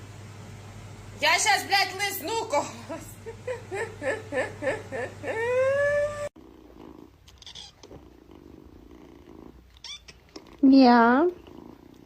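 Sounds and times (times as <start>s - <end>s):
cat purring: 6.4s - 12.0s.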